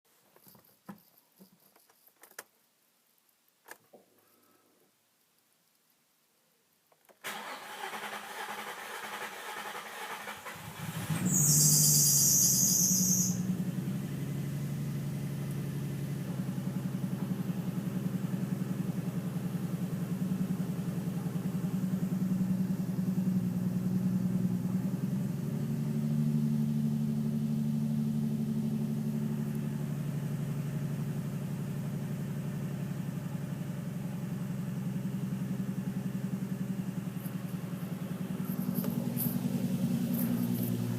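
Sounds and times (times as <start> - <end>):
starter motor cranking: 7.3 - 10.6
car engine idling: 7.3 - 40.9.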